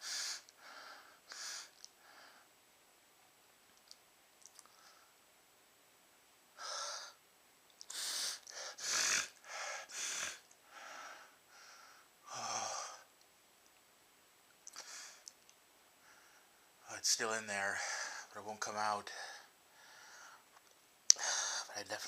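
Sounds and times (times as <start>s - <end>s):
man gasping breaths: 19.1s - 20.4s, 21.1s - 21.7s.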